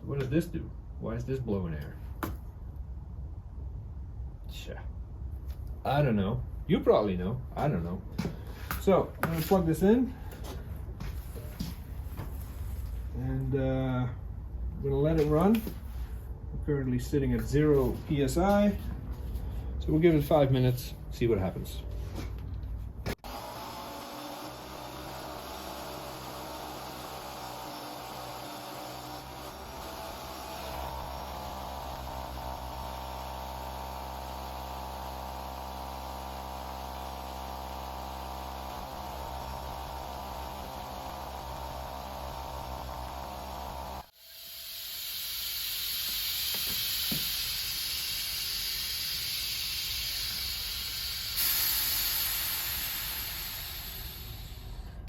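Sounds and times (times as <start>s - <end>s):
air compressor running: 23.1s - 55.0s
compressed air hissing: 38.3s - 55.0s.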